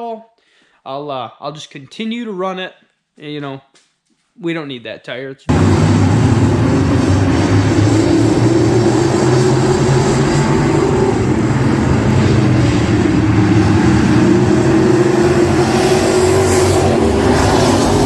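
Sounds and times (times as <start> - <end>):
race car engine at high revs: 5.5 - 18.0.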